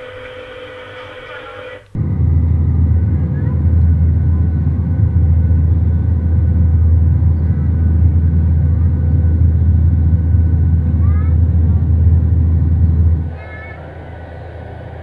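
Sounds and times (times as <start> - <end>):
aircraft cabin drone: 0.0 - 15.0
passengers murmuring: 0.8 - 15.0.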